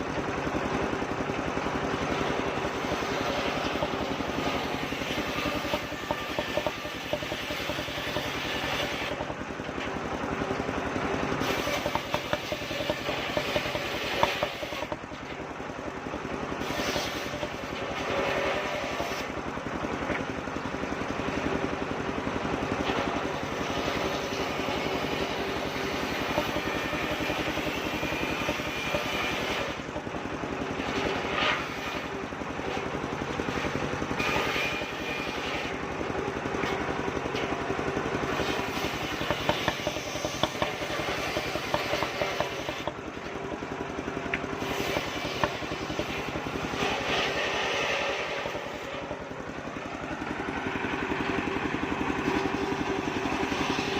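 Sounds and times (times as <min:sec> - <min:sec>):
circular saw mill engine running: 0:00.0 - 0:53.9
sharp knocks: 0:11.5 - 0:15.0, 0:38.4 - 0:43.0.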